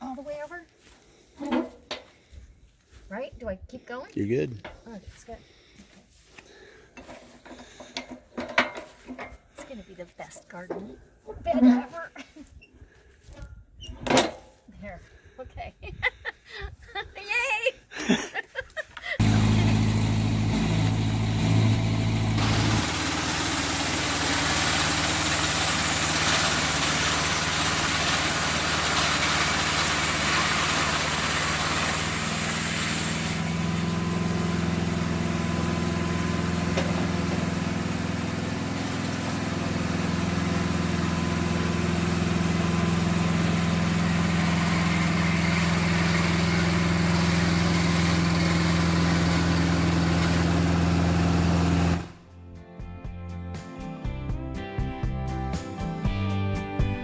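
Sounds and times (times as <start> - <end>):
engine running: 19.2 - 52.2.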